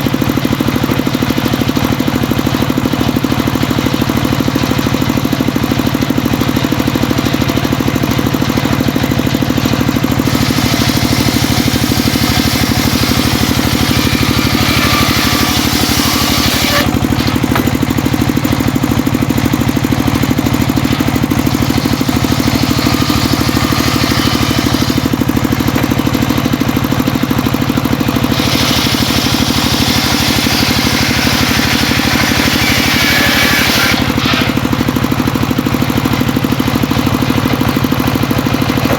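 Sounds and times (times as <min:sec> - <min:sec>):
engine running steadily: 0:00.0 - 0:38.9
circular saw cutting wood: 0:08.0 - 0:26.3, 0:28.0 - 0:35.4.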